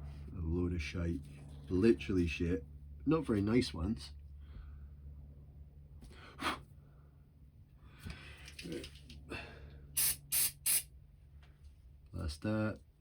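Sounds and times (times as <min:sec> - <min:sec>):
spray blasts hissing: 0:10.0 - 0:10.9.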